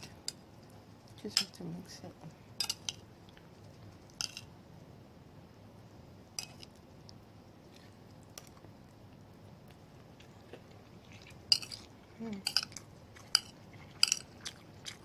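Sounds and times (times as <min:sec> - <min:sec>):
cutlery clinking against plate: 0:02.6 - 0:03.0, 0:11.5 - 0:11.8, 0:12.4 - 0:14.3.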